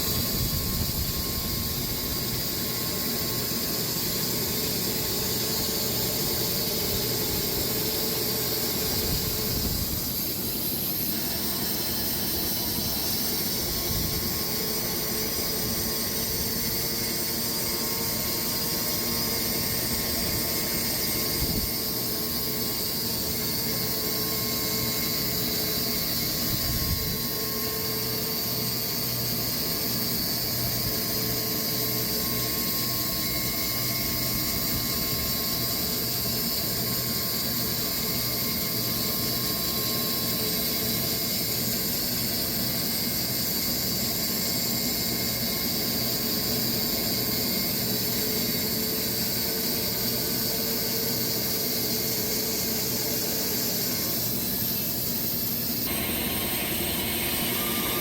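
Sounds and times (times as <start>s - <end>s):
sawmill cutting log: 55.9s - 58.0s.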